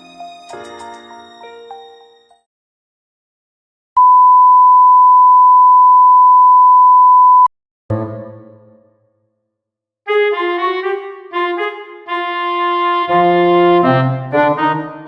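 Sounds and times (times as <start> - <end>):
loud electronic beep: 4.0 - 7.5.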